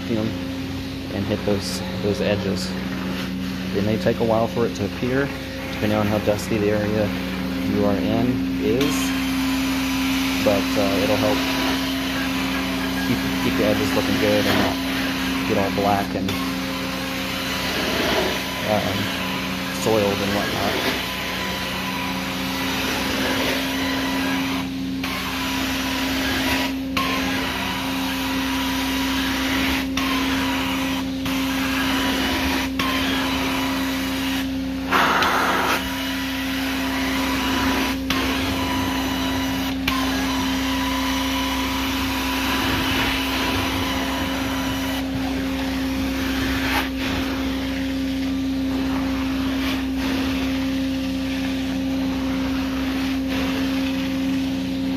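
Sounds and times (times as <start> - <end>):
extraction machine hum: 0.0 - 54.9
extraction wand suction rush: 34.8 - 36.0.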